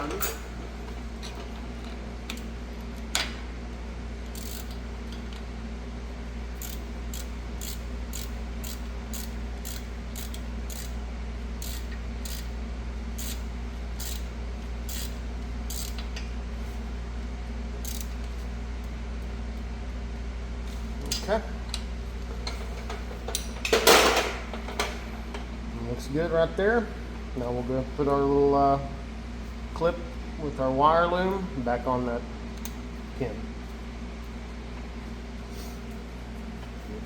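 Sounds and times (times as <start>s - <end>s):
hand ratchet clicking: 4.3s - 4.8s, 6.6s - 11.0s, 11.6s - 12.5s, 13.2s - 13.4s, 14.0s - 14.3s, 14.9s - 16.1s, 17.8s - 18.1s.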